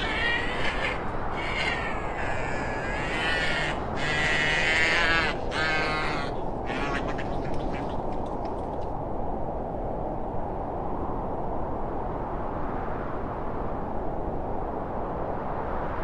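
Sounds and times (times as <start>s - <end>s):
harsh wavering creature calls: 0.0s - 8.2s.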